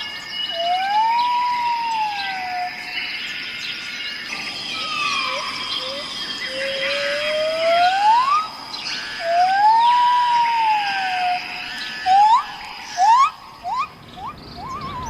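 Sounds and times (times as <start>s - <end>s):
faint bird chirps: 0.0s - 15.0s
bird whistling: 0.4s - 2.7s, 4.3s - 15.0s
steady high-pitched tone: 4.0s - 15.0s.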